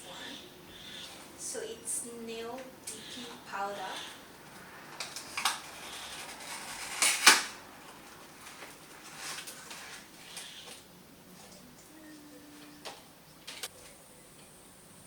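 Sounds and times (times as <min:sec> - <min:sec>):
packaging clacking: 0:05.0 - 0:07.6.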